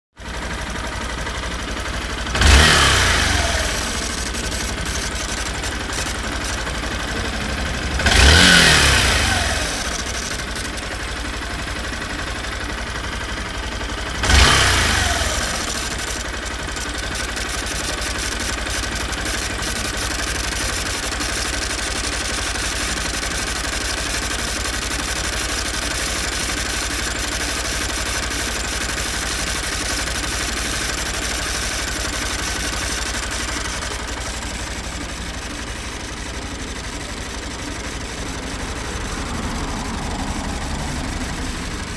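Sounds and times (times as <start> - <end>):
motorcycle engine idling: 0.1 - 41.9
internal engine noise: 0.2 - 41.9
throttle blips revving: 2.3 - 10.6, 14.2 - 16.2, 37.8 - 41.9.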